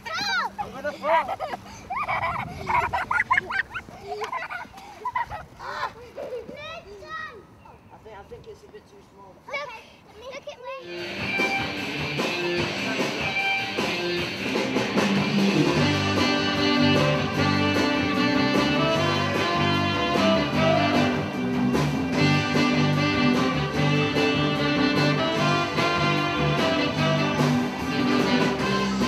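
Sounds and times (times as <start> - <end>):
upbeat instrumental music with guitar: 10.8 - 29.0.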